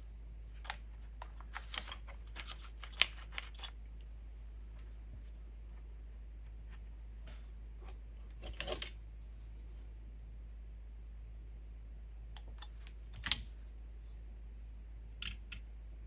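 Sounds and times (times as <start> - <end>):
light clicks of metal parts: 15.2 - 15.8.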